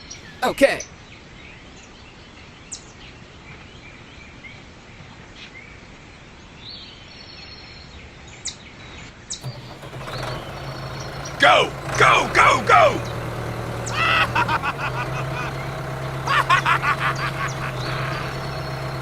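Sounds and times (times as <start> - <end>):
low motor hum: 9.4 - 19.0.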